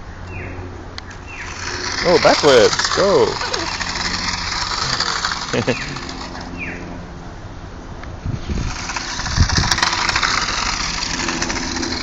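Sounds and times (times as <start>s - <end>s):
toy car motor whirring: 1.0s - 6.9s, 8.4s - 12.0s.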